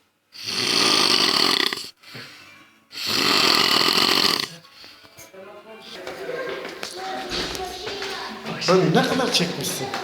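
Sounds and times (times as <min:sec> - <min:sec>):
man snoring loudly: 0:00.4 - 0:02.0, 0:03.0 - 0:04.5
quiet breath: 0:01.9 - 0:03.1, 0:04.4 - 0:05.2.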